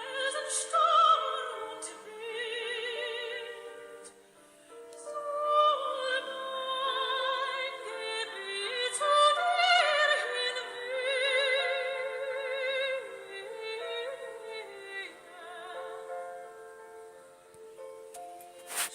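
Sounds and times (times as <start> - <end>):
musical accompaniment: 0.0 - 18.9.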